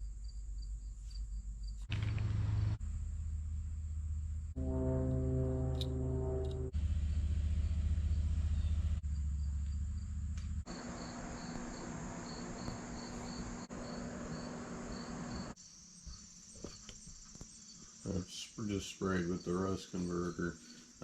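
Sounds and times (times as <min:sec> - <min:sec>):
crickets chirping: 0:00.0 - 0:01.9, 0:07.7 - 0:21.0
low hum and noise: 0:01.9 - 0:09.0.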